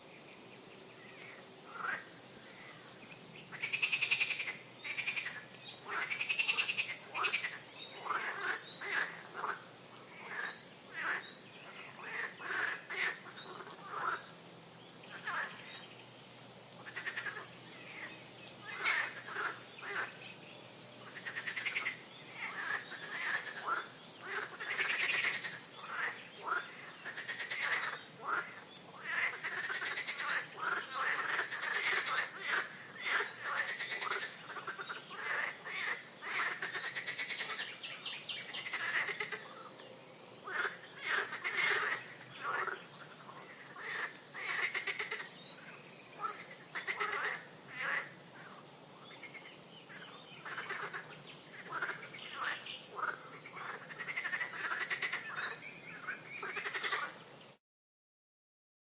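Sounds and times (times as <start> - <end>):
frogs croaking: 0.0 - 57.2.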